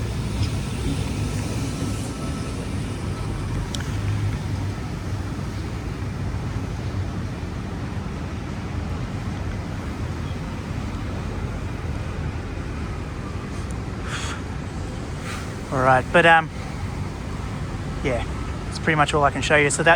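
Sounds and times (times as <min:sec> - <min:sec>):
road traffic rumble: 0:00.0 - 0:19.9.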